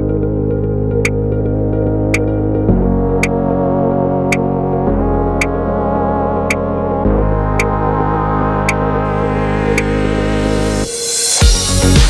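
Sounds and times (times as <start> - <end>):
sustained synth chord: 0.0 - 12.0
rising hiss: 9.1 - 12.0
kick drum thumps: 11.4 - 12.0.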